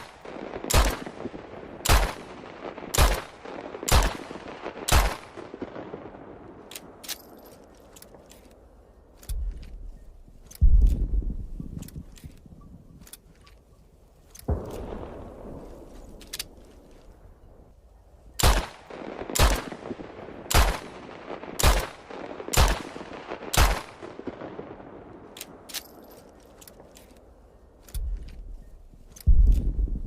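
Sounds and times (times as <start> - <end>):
light metallic clicks: 6.7 - 15.0, 15.8 - 17.2, 25.3 - 29.8.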